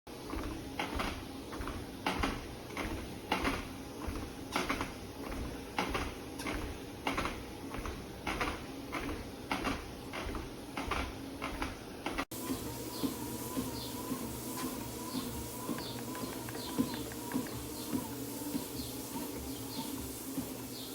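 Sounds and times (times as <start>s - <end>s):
footsteps on treadmill belt: 0.1s - 20.9s
treadmill low hum: 0.1s - 20.9s.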